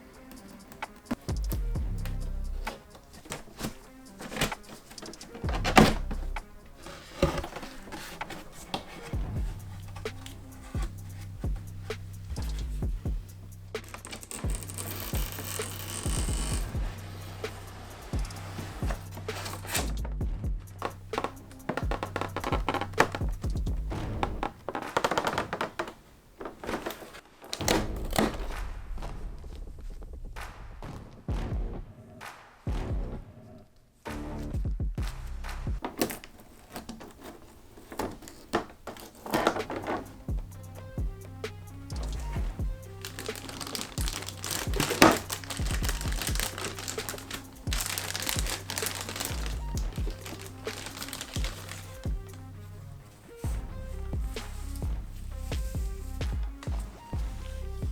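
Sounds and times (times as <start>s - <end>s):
toy packaging being handled: 0.0s - 13.2s, 13.8s - 19.9s, 20.8s - 27.6s, 35.8s - 53.5s
background music: 0.0s - 57.9s
sharp crackle of packaging: 13.8s - 16.8s, 35.8s - 40.4s, 41.9s - 52.4s.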